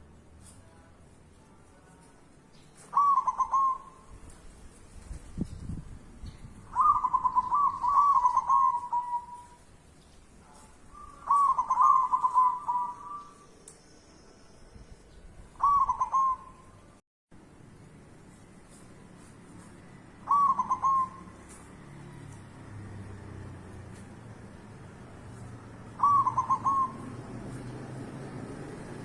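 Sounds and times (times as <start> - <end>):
bird warbling coos: 2.8 - 4.1, 6.7 - 9.6, 10.9 - 13.5, 15.6 - 16.8, 20.2 - 21.4, 25.9 - 27.7.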